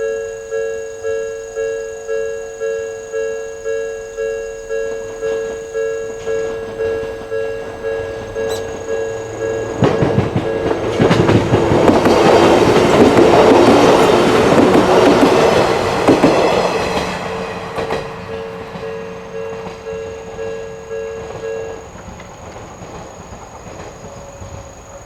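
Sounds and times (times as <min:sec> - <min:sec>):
level-crossing bell ringing: 0:00.0 - 0:11.4, 0:16.7 - 0:22.0
train wheels clattering over rails: 0:04.4 - 0:25.0.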